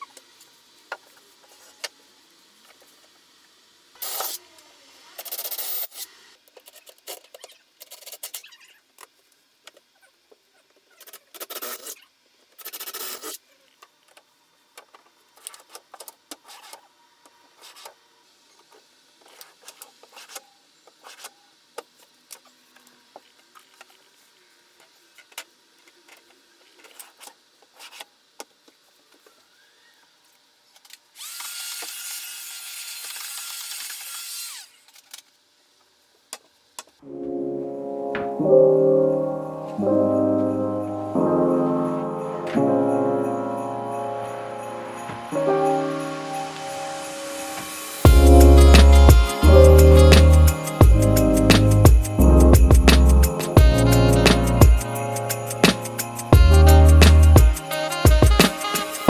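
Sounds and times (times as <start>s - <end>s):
power drill running: 31.2s - 34.9s.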